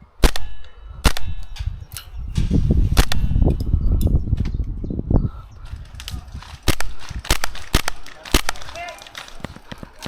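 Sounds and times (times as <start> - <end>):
sharp cracks: 0.2 - 3.7, 5.7 - 10.0
gear rumbling and rattling: 5.6 - 10.0.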